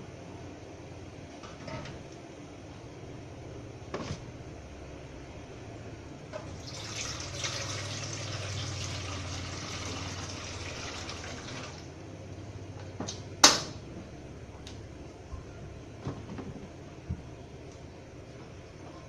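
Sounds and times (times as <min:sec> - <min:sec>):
low steady hum: 0:00.0 - 0:19.0
water pouring: 0:06.5 - 0:11.9.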